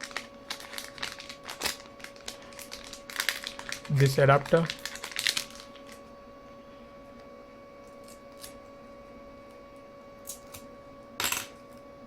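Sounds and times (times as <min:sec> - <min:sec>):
packaging being handled: 0:00.0 - 0:06.0
faint electrical hum: 0:00.0 - 0:12.0.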